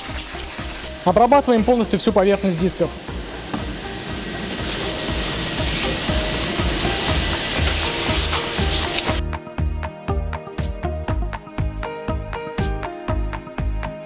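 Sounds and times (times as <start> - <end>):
brake cleaner spray hiss: 0.0 - 9.2
background music with steady beat: 0.0 - 14.0.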